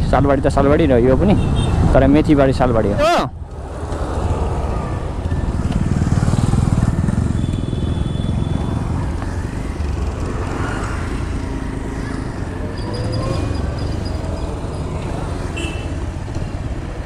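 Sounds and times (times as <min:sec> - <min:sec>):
motorcycle engine droning: 0:03.4 - 0:17.0.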